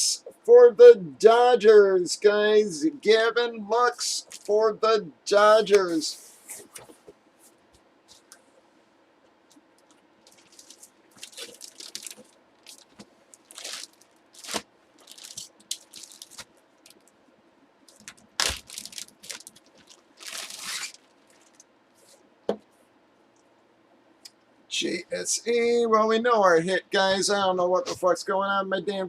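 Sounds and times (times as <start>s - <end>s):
plastic and card crinkling: 4.2s - 4.6s, 9.5s - 17.2s, 17.9s - 21.7s.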